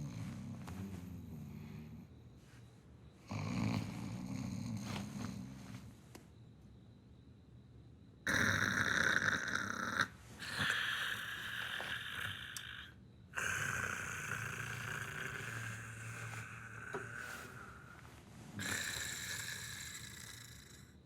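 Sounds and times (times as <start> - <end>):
person snoring: 3.2 - 5.9, 8.3 - 21.0.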